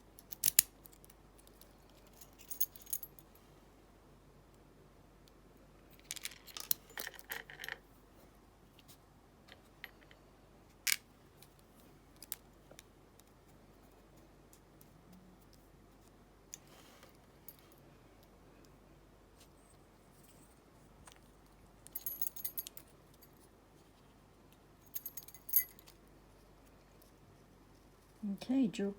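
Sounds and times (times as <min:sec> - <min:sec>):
small metal lock parts rattling: 0:00.0 - 0:03.3, 0:06.0 - 0:07.9, 0:21.8 - 0:23.4, 0:24.8 - 0:26.0.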